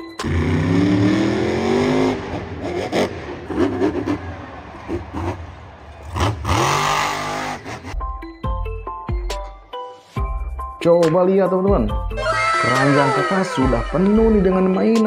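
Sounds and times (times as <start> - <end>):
car engine revving: 0.2 - 8.0.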